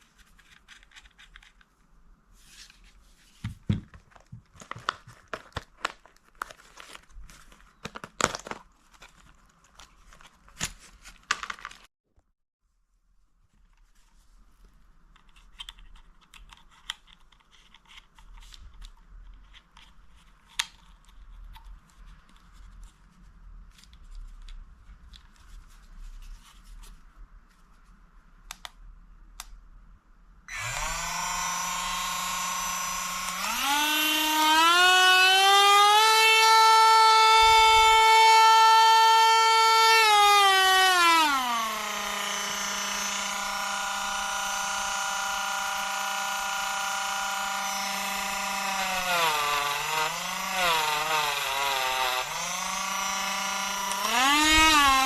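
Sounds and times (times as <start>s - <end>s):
rotary tool motor whining: 30.5s - 55.0s.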